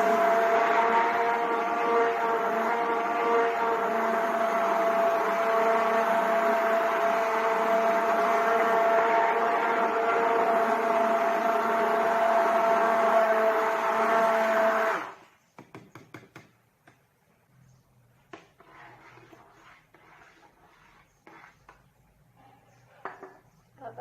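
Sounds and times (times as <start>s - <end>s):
blender motor whining: 0.0s - 15.3s.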